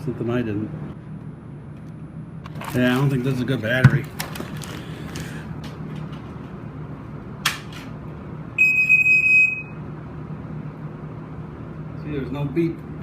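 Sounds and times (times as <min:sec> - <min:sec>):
smoke alarm beep: 0:08.6 - 0:09.8.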